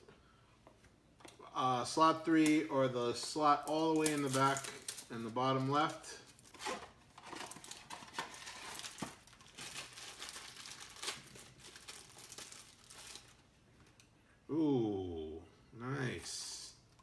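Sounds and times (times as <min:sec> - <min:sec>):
packaging tearing and crinkling: 0:03.6 - 0:13.4.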